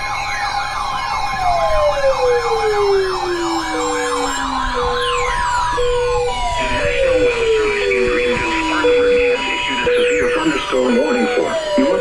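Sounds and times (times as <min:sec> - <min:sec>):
falling siren tone: 0:00.0 - 0:12.0
siren wailing up and down: 0:00.0 - 0:12.0
steady siren tone: 0:00.0 - 0:12.0
short low beeps: 0:03.6 - 0:12.0.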